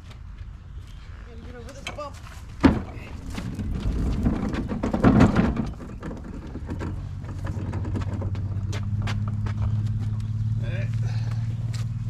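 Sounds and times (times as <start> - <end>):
caster wheels rolling over concrete: 1.6 - 10.4
clunk of wheels over bump: 1.7 - 10.5.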